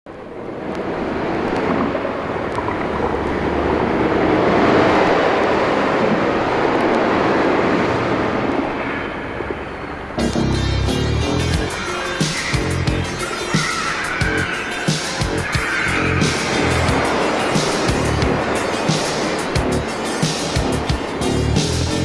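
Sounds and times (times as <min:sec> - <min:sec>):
waves washing on shore: 0:00.1 - 0:10.2, 0:11.7 - 0:22.0
music: 0:10.2 - 0:22.0.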